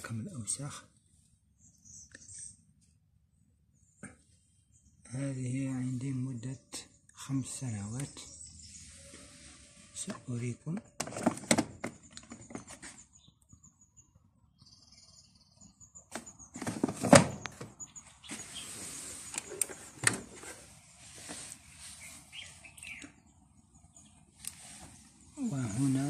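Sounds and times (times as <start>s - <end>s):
rustle: 8.6s - 10.0s, 18.2s - 23.0s, 24.4s - 26.0s.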